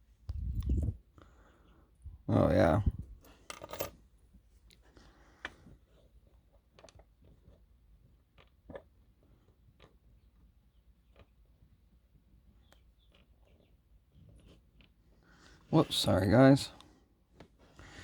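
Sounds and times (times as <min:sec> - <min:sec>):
small metallic lock parts clicking: 0:03.5 - 0:04.0.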